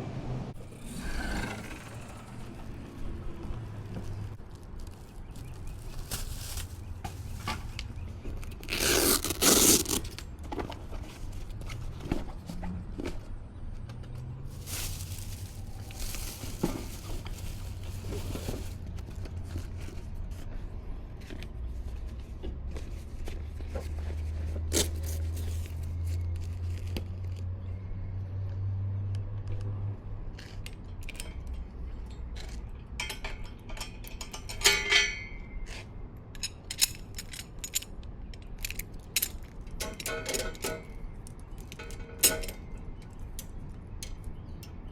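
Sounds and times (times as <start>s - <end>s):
bicycle tyres rumbling: 0.6s - 10.2s, 14.2s - 20.4s.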